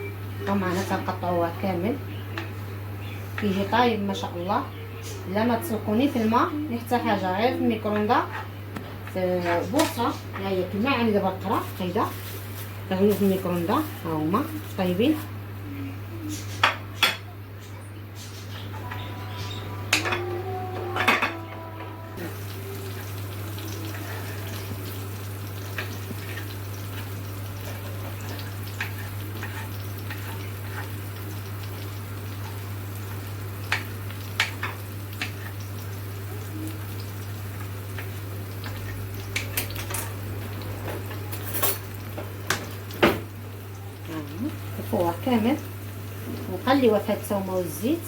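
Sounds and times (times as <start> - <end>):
utensils clinking against dishes: 16.3 - 22.3, 38.0 - 43.2.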